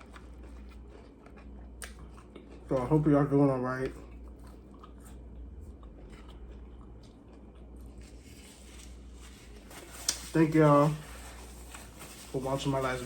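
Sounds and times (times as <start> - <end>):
steady low hum: 0.0 - 13.0
soft chewing mouth clicks: 0.1 - 2.9, 3.8 - 8.0.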